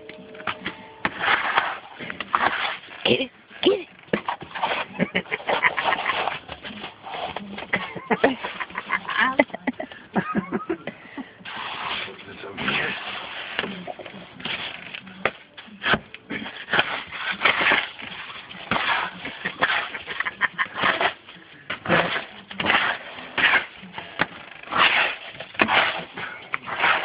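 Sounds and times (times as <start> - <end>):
puppies digging in snow: 4.3 - 9.2, 11.4 - 14.8, 15.8 - 21.2, 21.8 - 27.0.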